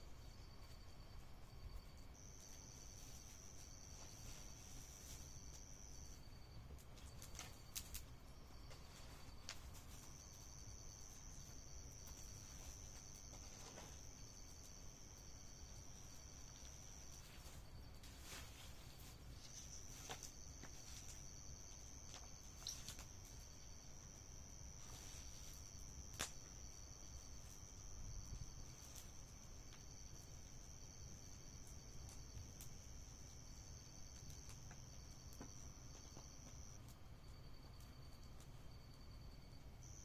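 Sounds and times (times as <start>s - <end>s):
cricket trilling: 0.1s - 40.0s
insect chirping in pulses: 0.2s - 40.0s
campfire pops: 6.7s - 14.8s, 19.7s - 23.6s, 25.7s - 26.7s, 31.3s - 37.1s.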